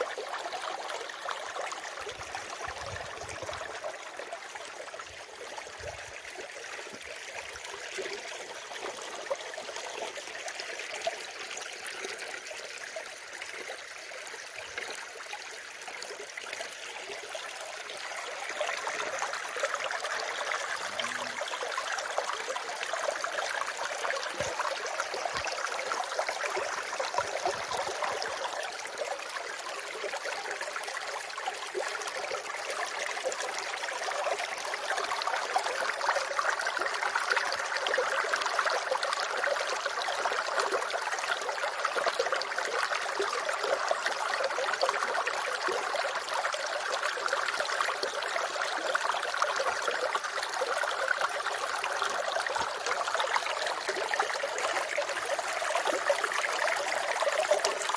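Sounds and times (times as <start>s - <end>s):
running water: 0.0s - 57.9s.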